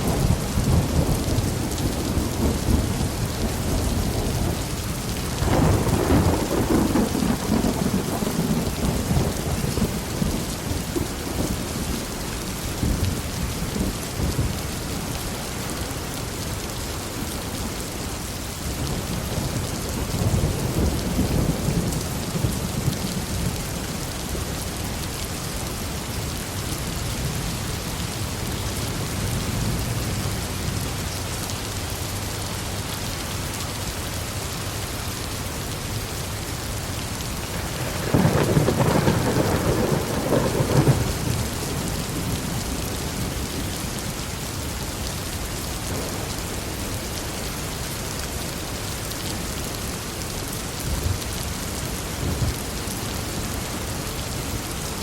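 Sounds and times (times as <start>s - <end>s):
rolling thunder: 0.0s - 12.0s, 37.5s - 43.6s, 45.8s - 47.4s
heavy rain falling: 0.0s - 55.0s.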